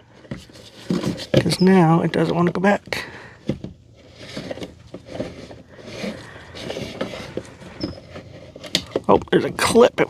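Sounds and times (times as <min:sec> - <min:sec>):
small plastic clicks and scrapes: 0:03.4 - 0:09.4.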